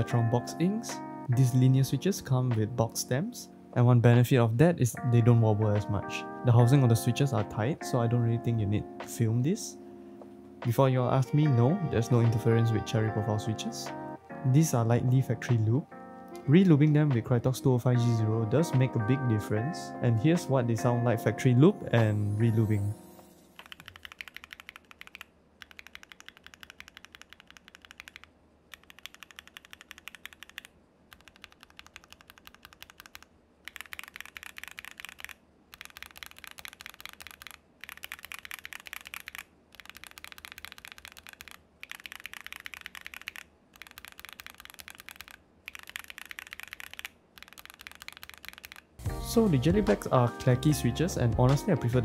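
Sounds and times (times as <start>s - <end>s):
mechanical keyboard typing: 23.6s - 49.0s.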